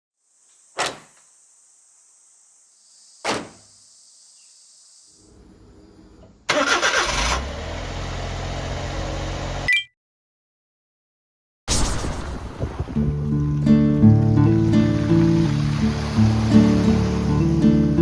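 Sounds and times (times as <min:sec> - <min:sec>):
van engine starting and idling: 0:05.2 - 0:09.7, 0:13.0 - 0:18.0.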